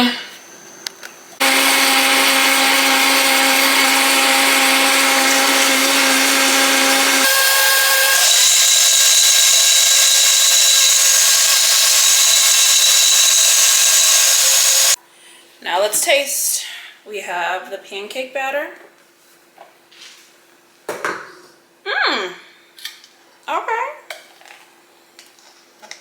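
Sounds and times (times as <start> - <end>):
countertop blender running: 1.4 - 15.0.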